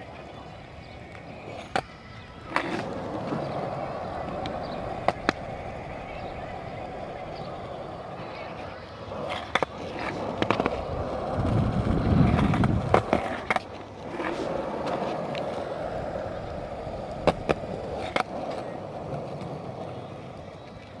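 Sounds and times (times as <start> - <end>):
skateboard clacks: 0.0 - 21.0
skateboard wheels rolling on ramp: 0.0 - 21.0.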